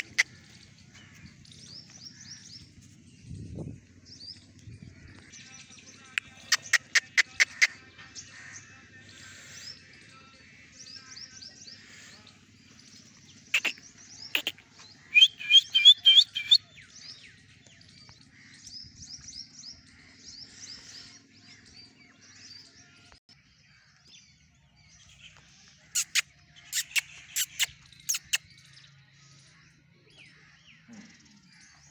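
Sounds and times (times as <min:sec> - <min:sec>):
small birds chirping: 0:00.0 - 0:07.8, 0:09.0 - 0:18.2, 0:24.3 - 0:28.9.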